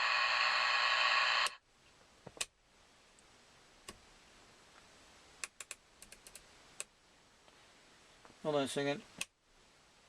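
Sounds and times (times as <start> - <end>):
radio static hiss: 0.0 - 1.6.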